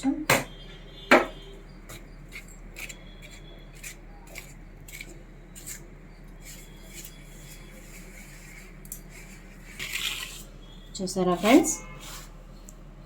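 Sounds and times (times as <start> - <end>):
light scraping in a vessel: 2.3 - 10.5.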